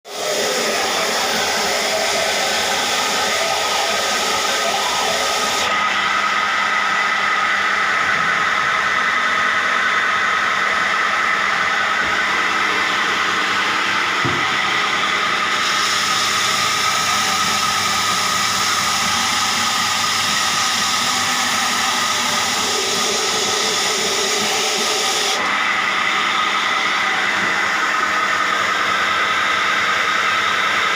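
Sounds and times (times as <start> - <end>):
belt sander running: 0.1 - 30.9.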